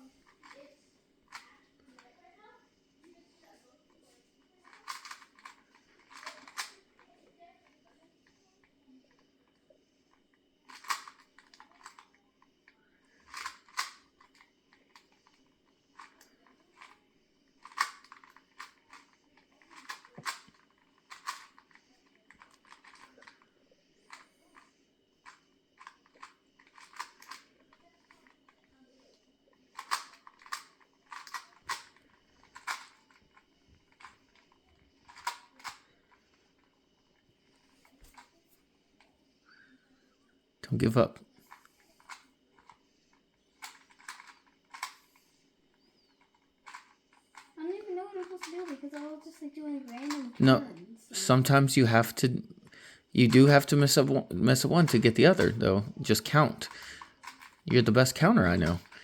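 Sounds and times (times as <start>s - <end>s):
puzzle cube layers clicking: 4.6s - 6.8s, 29.7s - 35.8s, 49.9s - 50.6s, 53.2s - 59.0s.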